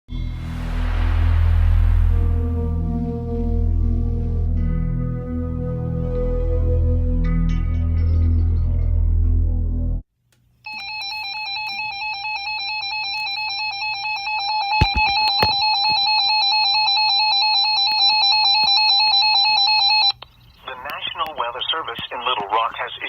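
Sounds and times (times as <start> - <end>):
intro music: 0.1 - 10.0
two-tone alarm: 10.7 - 20.2.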